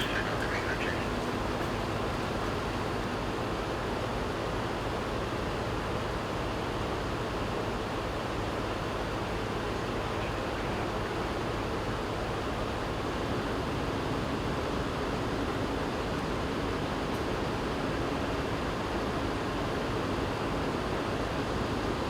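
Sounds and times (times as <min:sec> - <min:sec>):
floodwater rushing: 0:00.0 - 0:03.2
low steady hum: 0:00.0 - 0:03.2.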